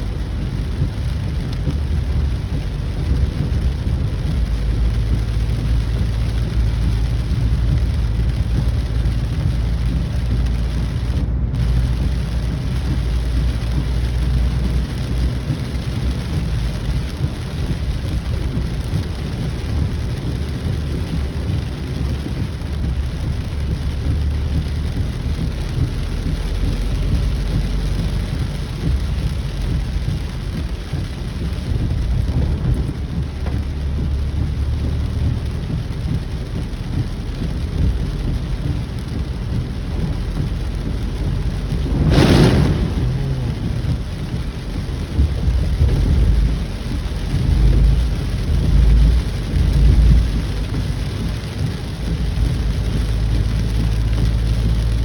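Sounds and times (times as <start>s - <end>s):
heavy rain: 0.0s - 55.0s
low rumble: 0.0s - 55.0s.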